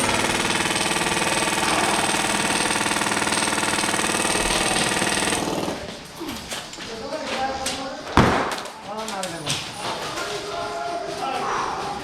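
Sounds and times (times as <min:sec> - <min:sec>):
electric airsoft gun full-auto burst: 0:00.0 - 0:05.9.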